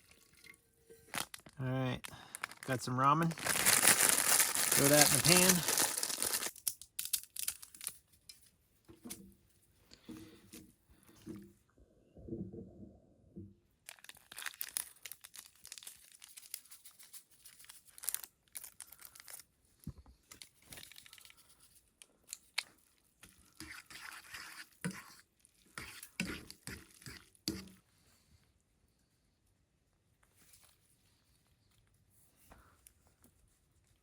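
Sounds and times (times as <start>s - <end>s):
plastic packaging crinkling: 0.2s - 8.1s, 13.9s - 19.5s, 20.3s - 21.7s.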